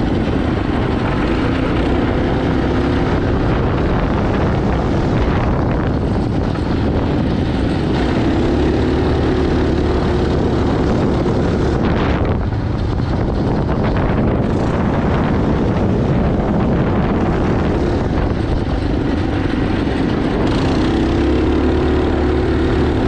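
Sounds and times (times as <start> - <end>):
small engine running: 0.0 - 23.0
wind rushing over microphone: 0.0 - 23.0.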